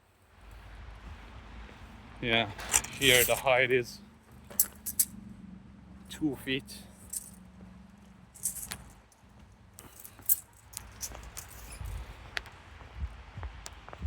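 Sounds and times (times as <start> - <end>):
metallic jingling and clicking: 2.6 - 3.5, 4.4 - 5.3, 6.7 - 12.0
soft low thumps: 11.8 - 14.0.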